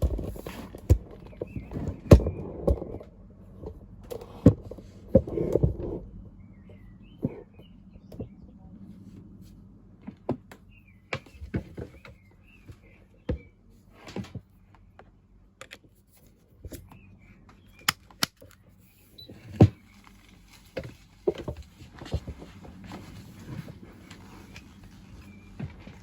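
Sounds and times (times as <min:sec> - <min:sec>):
faint chirping: 0:06.2 - 0:08.9.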